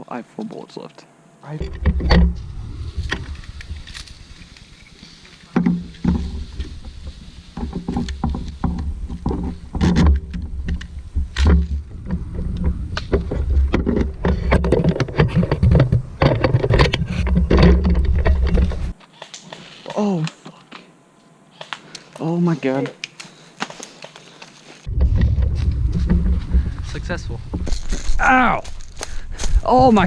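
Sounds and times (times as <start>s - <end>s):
low rumbling on microphone: 1.6s - 19.0s, 24.9s - 30.0s
sharp clicks and crunches: 21.6s - 29.6s.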